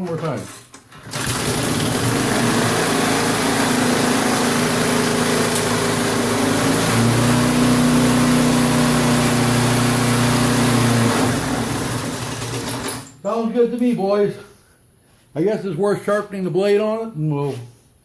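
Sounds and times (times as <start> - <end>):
lawnmower engine running: 1.0 - 13.1.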